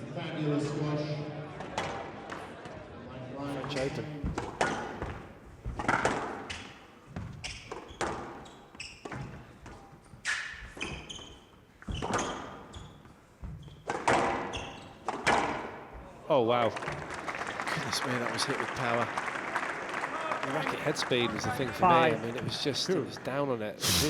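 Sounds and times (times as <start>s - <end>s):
squash ball thuds: 4.2s - 6.6s.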